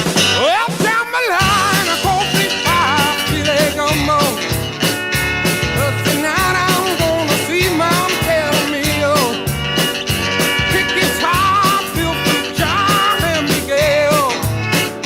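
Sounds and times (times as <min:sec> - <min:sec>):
rock music: 0:00.0 - 0:15.0.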